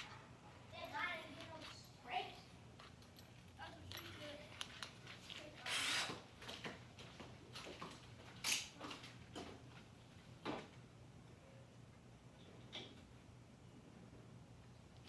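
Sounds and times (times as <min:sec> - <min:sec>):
tools scraping: 0:03.0 - 0:06.2.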